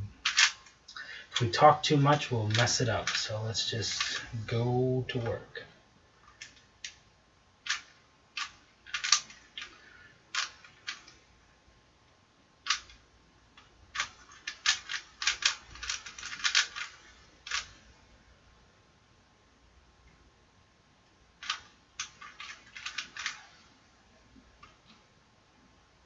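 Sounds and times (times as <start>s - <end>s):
puzzle cube clacking: 0.0s - 5.6s, 6.2s - 11.3s, 12.6s - 18.0s, 21.4s - 25.1s.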